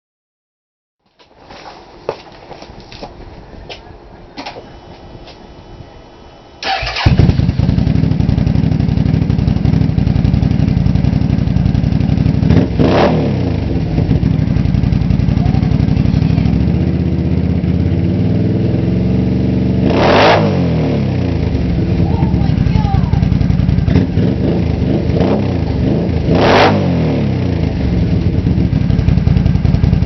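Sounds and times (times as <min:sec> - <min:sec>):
engine starter cranking: 0:06.6 - 0:07.6
atv engine idling: 0:06.6 - 0:19.8, 0:21.2 - 0:26.4, 0:27.3 - 0:30.0
engine revving: 0:06.6 - 0:30.0.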